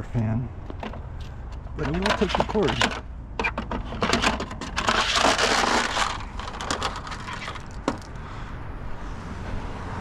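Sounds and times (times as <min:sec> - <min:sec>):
rustling and scraping: 0:00.6 - 0:08.2.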